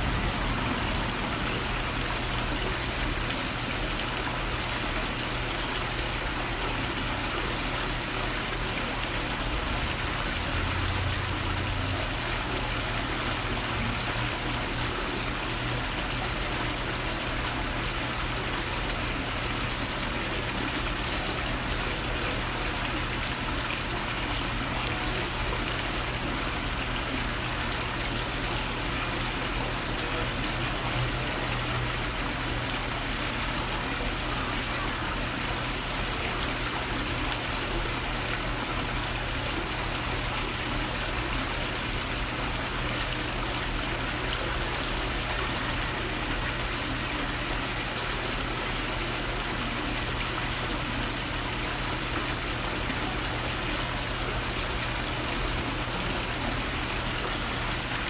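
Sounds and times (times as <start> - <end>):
steady rushing noise: 0.0 - 3.2
constant low hum: 0.0 - 58.0.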